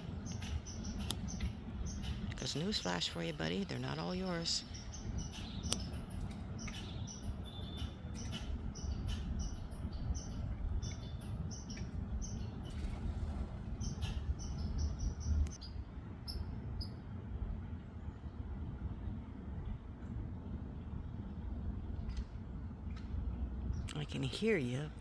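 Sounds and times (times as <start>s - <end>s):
steady low rumble: 0.0s - 25.0s.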